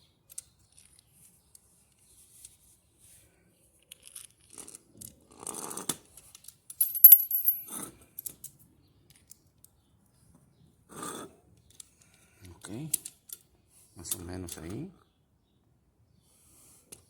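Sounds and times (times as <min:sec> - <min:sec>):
metal parts scraping and clicking: 0:00.3 - 0:01.0, 0:03.9 - 0:05.1
ringing metallic clink: 0:06.8 - 0:07.7.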